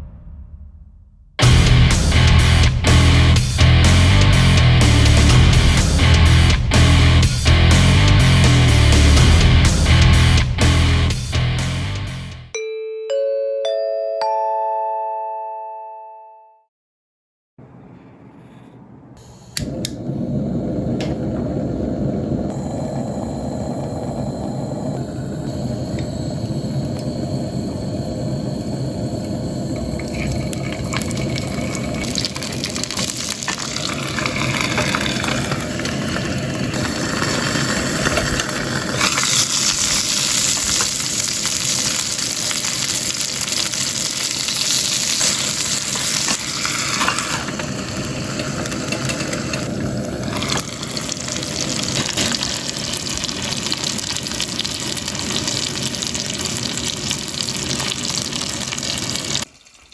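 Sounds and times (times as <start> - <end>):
dumplings sizzling in a pan: 25.3 - 59.9.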